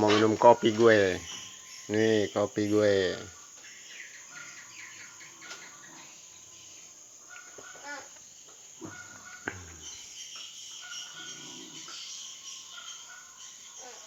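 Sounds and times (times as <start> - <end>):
crickets and insects chirring: 0.0 - 14.0
short bird calls: 8.8 - 10.2.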